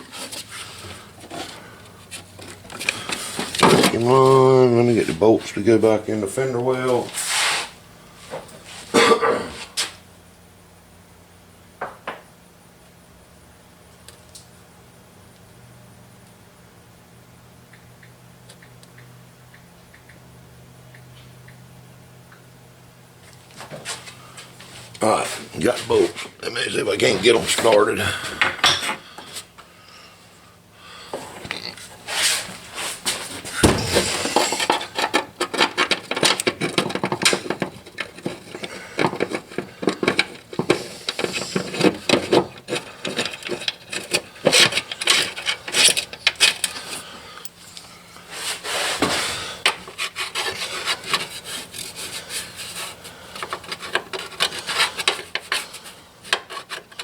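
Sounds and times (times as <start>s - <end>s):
metal scraping and clicking: 33.6s - 47.0s.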